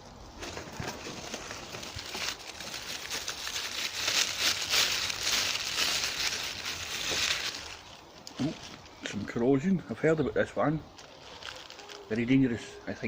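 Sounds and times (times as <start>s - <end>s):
paper packaging rustling: 0.3s - 9.2s, 11.0s - 12.4s.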